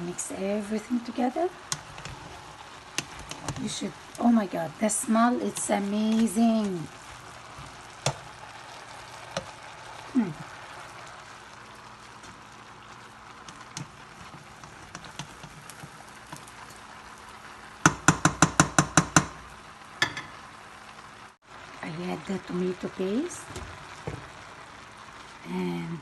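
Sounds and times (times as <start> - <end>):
food sizzling in a pot: 0.0 - 26.0
spoon knocking against pot: 17.9 - 19.4, 20.0 - 20.4.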